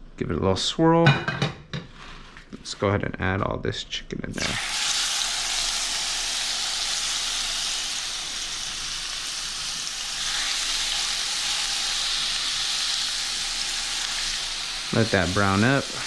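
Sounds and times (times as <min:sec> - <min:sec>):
chicken sizzling in a hot pan: 0:04.4 - 0:16.0.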